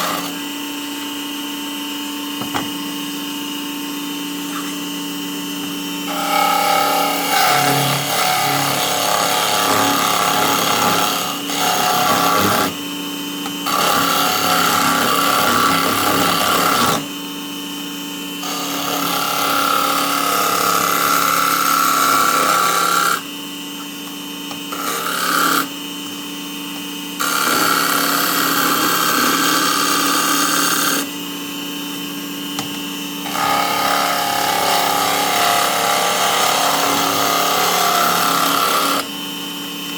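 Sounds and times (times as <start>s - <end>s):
turning tool cutting wood: 0.0s - 1.0s, 5.5s - 17.2s, 18.4s - 26.2s, 27.1s - 31.2s, 32.4s - 39.3s
lathe motor hum: 0.0s - 1.3s, 4.5s - 12.8s, 33.2s - 39.2s.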